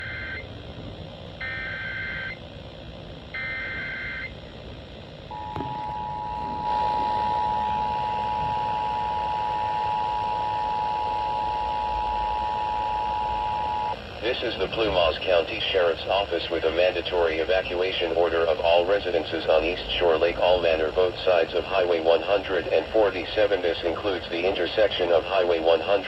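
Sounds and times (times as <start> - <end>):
two-note attention signal: 5.3 - 10.2
warbling data tone bursts: 5.3 - 14.4.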